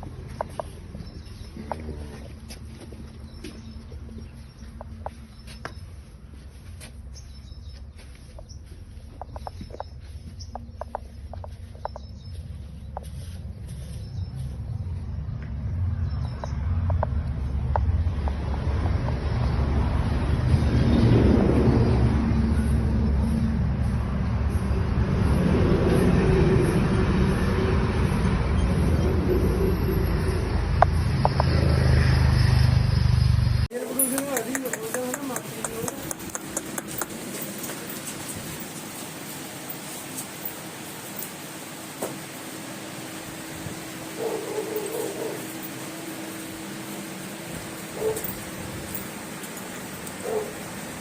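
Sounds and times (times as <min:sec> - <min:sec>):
steady low rumble: 0:00.0 - 0:31.7
vehicle engine running: 0:00.0 - 0:38.6
rushing noise: 0:16.6 - 0:33.7.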